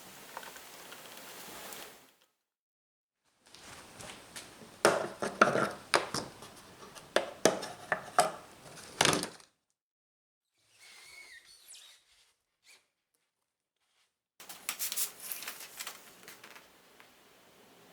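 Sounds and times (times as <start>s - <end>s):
wooden knocks and clatter: 4.1s - 9.4s
faint gliding squeak: 10.6s - 12.9s.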